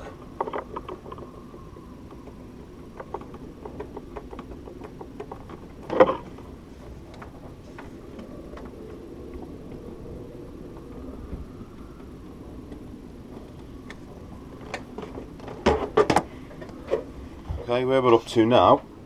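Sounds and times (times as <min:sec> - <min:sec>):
light irregular ticks and clicks: 0:00.0 - 0:15.6
faint steady hum: 0:00.0 - 0:19.0.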